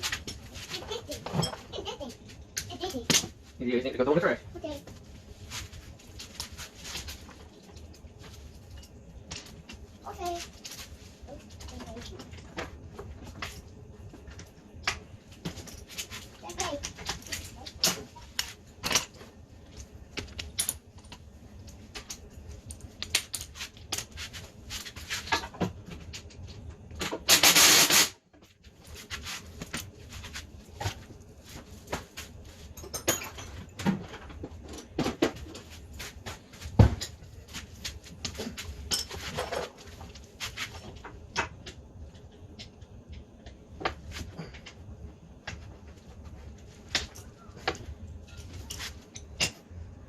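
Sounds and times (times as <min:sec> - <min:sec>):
tools and metal parts clinking: 0:00.0 - 0:01.7, 0:07.0 - 0:09.8, 0:15.4 - 0:26.4, 0:32.5 - 0:36.1, 0:38.2 - 0:41.6, 0:47.0 - 0:49.7.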